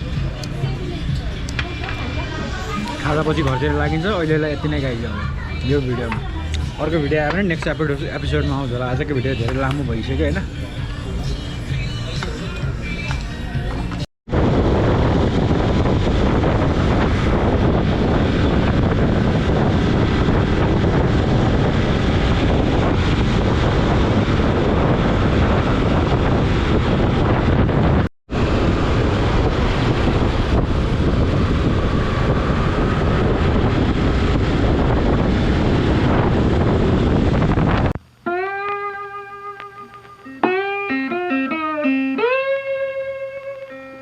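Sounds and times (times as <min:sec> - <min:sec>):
wind noise on microphone: 0:00.0 - 0:38.1
road noise: 0:00.0 - 0:44.0
motorcycle engine: 0:14.4 - 0:38.0.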